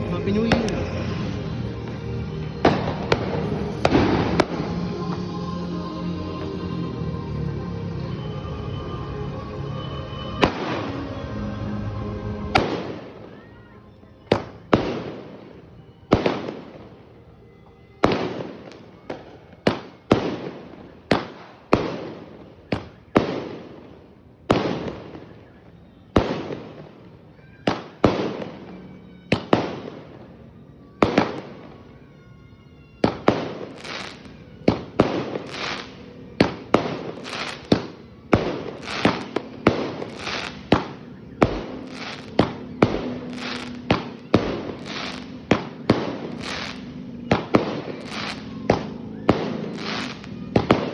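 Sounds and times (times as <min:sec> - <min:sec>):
firework bangs: 0:00.0 - 0:05.5, 0:10.0 - 0:17.1, 0:18.0 - 0:30.3, 0:33.0 - 0:50.9
music: 0:00.0 - 0:22.2, 0:26.2 - 0:50.9.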